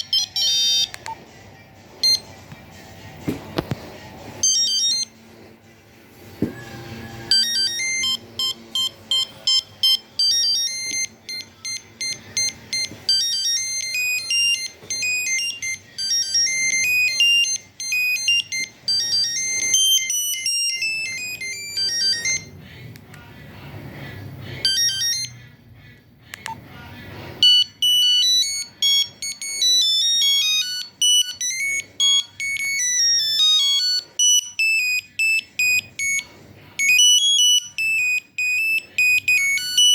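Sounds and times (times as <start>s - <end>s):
mobile phone ringtone beeps: 0.0s - 1.2s, 2.0s - 2.4s, 4.4s - 5.2s, 6.7s - 22.6s, 24.6s - 25.4s, 27.4s - 39.9s.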